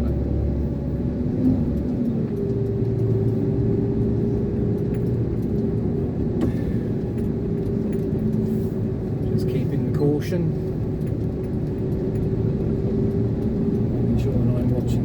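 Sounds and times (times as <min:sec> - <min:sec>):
lorry diesel engine hum: 0:00.0 - 0:15.0.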